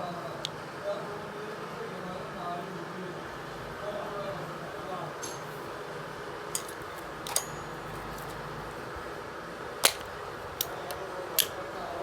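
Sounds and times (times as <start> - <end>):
steady background hum: 0.0 - 12.0
small metal parts clicking: 5.2 - 5.6, 6.5 - 9.0, 9.8 - 11.6.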